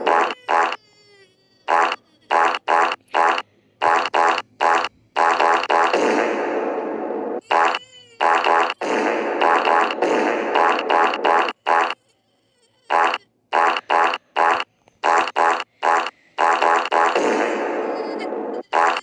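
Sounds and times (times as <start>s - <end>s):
cartoon fart sound effects: 0.0s - 0.8s, 1.7s - 12.0s, 12.9s - 19.0s.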